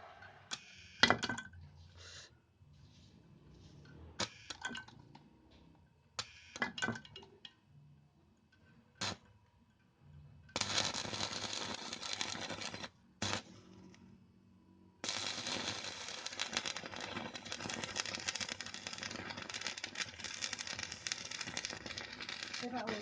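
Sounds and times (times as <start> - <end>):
welding arc crackling: 0.5 - 1.1, 9.0 - 9.2, 10.6 - 14.0, 15.0 - 23.0.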